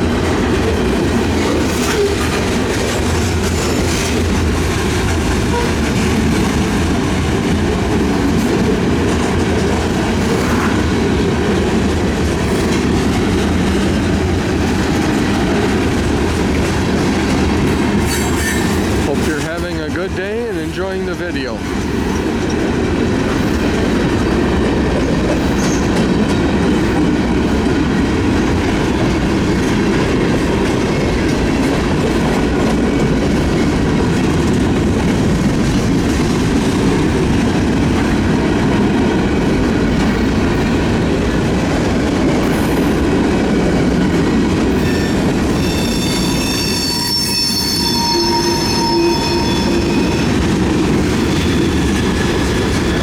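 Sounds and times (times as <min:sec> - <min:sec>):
train wheels rumbling: 0:00.0 - 0:53.0
train wheels squealing: 0:18.1 - 0:18.9, 0:25.4 - 0:25.9, 0:44.8 - 0:50.5, 0:51.1 - 0:53.0.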